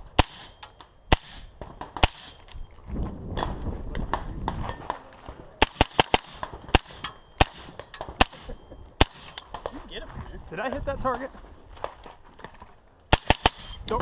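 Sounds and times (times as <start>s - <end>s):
low rumbling handling noise: 0.0s - 5.6s
rifle shots: 0.1s - 2.5s, 5.6s - 9.6s, 13.1s - 13.8s.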